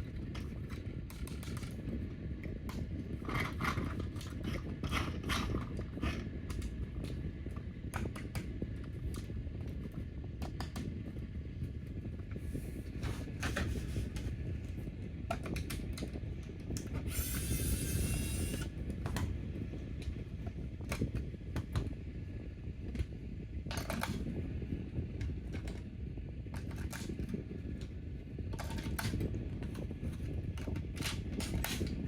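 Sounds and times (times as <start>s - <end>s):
toy mechanism whirring: 17.0s - 18.7s.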